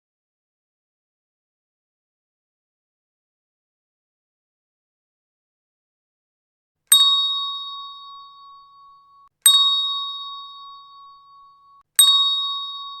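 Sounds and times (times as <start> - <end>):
bell-like chime: 6.9 - 13.0.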